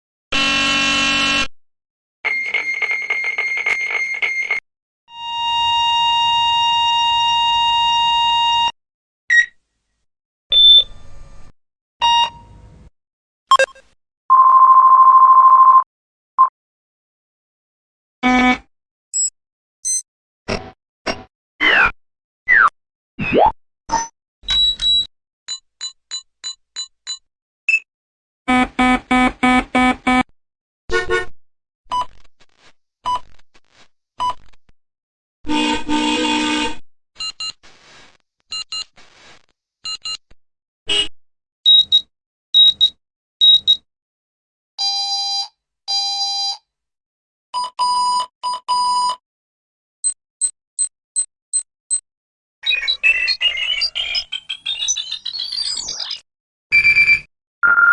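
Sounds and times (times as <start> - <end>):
short electronic beeps: 13.5 - 15.8, 19.2 - 20.0, 50.0 - 52.0.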